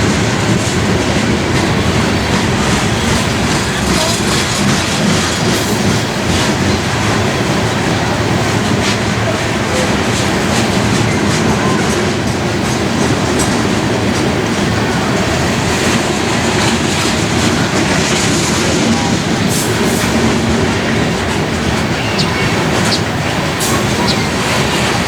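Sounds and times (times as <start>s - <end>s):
clickety-clack over rail joints: 0.0s - 25.0s
train wheels rumbling on rails: 0.0s - 25.0s
high wheel squeals: 17.4s - 25.0s.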